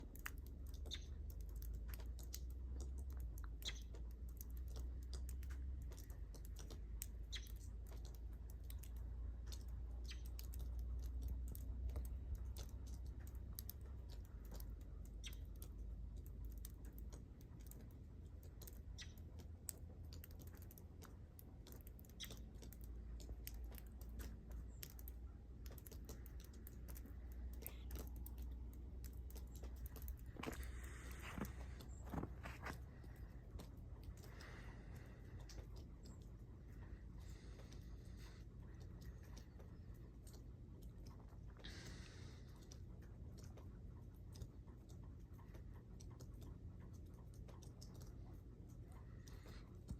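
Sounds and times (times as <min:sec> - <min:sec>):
faint irregular clicks and ticks: 0:00.0 - 0:49.9
low steady rumble: 0:00.0 - 0:49.9.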